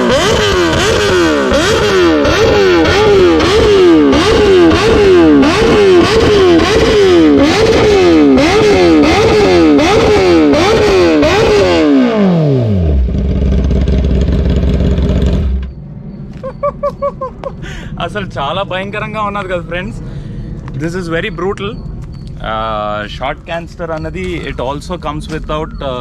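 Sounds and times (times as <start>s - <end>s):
motorcycle engine revving: 0.0s - 15.8s
motorcycle idling: 12.7s - 15.8s.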